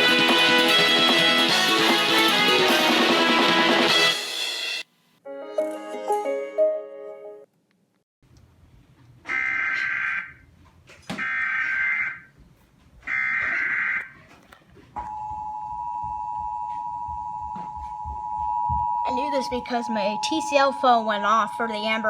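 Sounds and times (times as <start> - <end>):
music track: 0.0 - 7.5.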